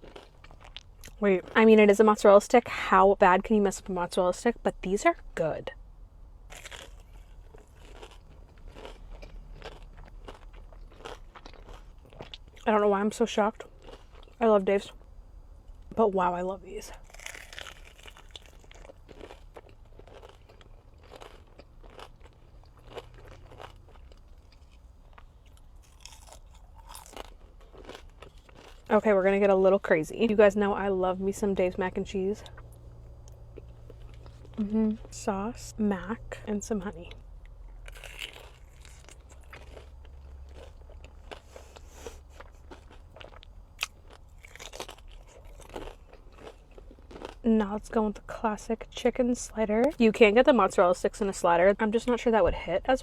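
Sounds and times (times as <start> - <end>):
crunchy chewing: 0.0 - 1.6, 6.5 - 12.7, 13.6 - 14.4, 16.9 - 28.9, 32.4 - 34.6, 37.1 - 47.5.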